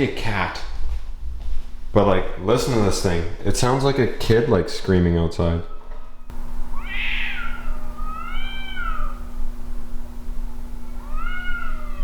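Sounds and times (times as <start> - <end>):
steady low hum: 0.0 - 12.0
cats yowling: 5.6 - 9.4, 10.8 - 12.0.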